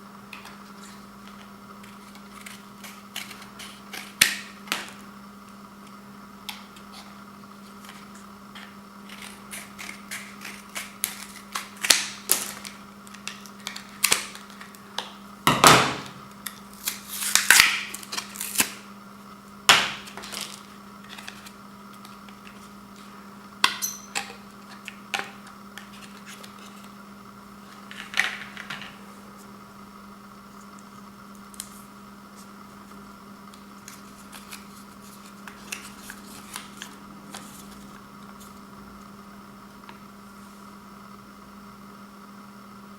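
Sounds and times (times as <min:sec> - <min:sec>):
steady background hum: 0:00.0 - 0:42.9.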